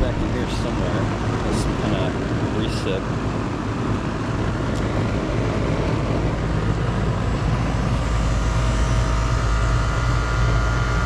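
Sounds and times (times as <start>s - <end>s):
compressor low hum: 0.0s - 11.0s
condenser fan air rush: 0.0s - 11.0s.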